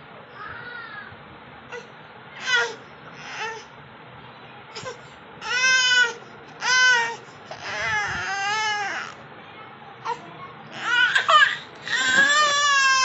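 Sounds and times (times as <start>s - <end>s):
baby crying: 4.8s - 9.2s, 10.7s - 13.0s.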